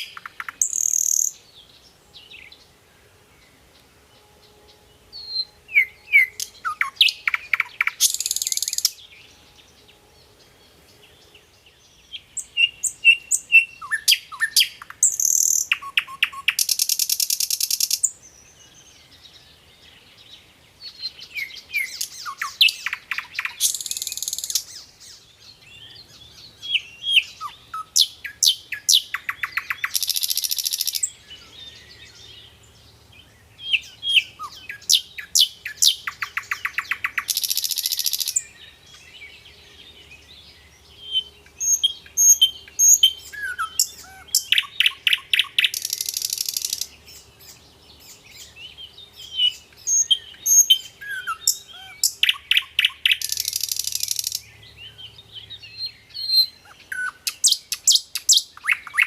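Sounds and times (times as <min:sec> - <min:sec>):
nightingale singing: 0:00.0 - 0:59.0.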